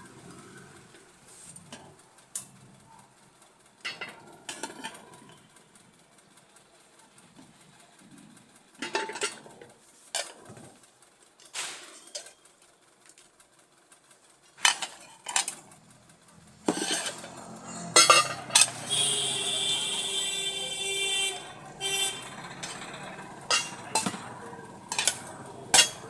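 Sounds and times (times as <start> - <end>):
pressure cooker metal clanking: 3.8 - 5.4, 8.8 - 9.5, 14.6 - 15.8, 16.4 - 26.0
metal scraping: 16.4 - 26.0.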